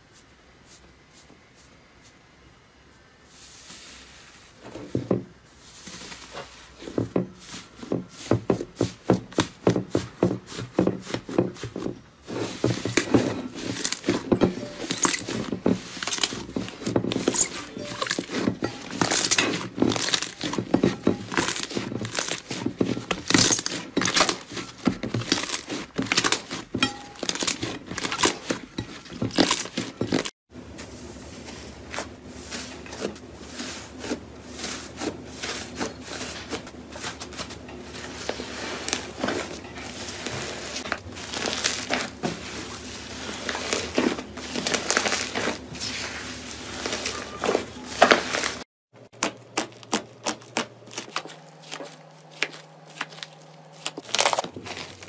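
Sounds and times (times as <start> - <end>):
slime crackling and popping: 41.2 - 42.1, 43.4 - 45.6, 52.4 - 55.0.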